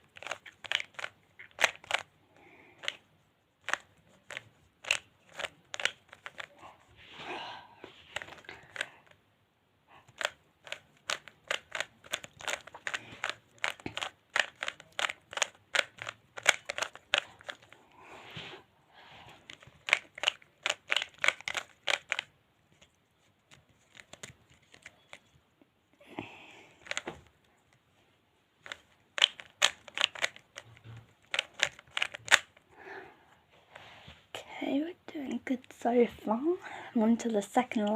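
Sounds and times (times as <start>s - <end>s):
puzzle cube clicking: 0.0s - 2.1s, 2.8s - 3.0s, 3.6s - 6.6s, 8.1s - 9.2s, 10.0s - 17.8s, 19.4s - 25.3s, 26.8s - 27.1s, 28.6s - 32.6s.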